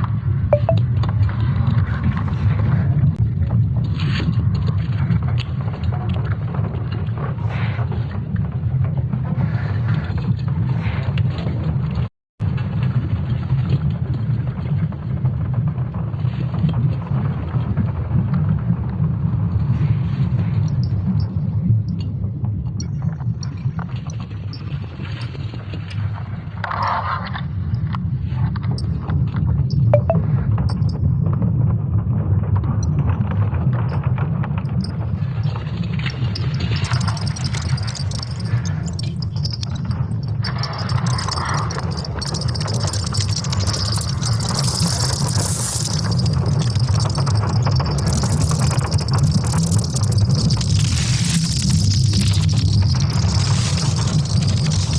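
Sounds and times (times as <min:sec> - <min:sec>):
crackling and creaking: 0:33.3 - 0:54.9
deep rumble: 0:33.3 - 0:54.9.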